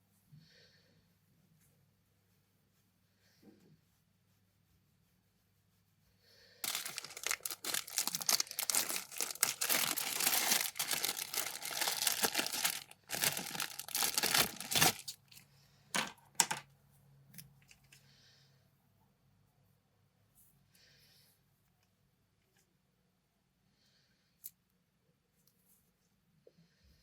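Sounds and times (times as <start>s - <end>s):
plastic packaging crinkling: 6.6s - 15.4s.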